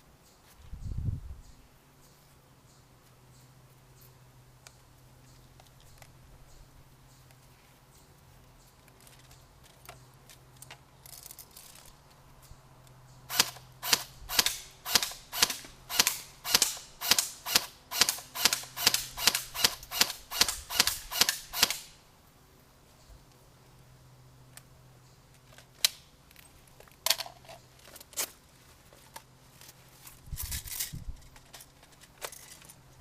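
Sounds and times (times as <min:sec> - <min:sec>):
sharp loud clicks: 0:13.3 - 0:22.0.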